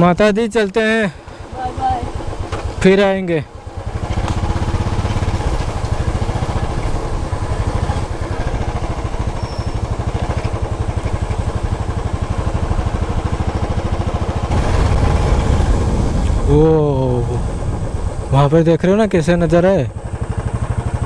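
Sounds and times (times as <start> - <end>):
wind and road noise: 0.0 - 21.0
motorcycle engine rumbling: 0.8 - 21.0.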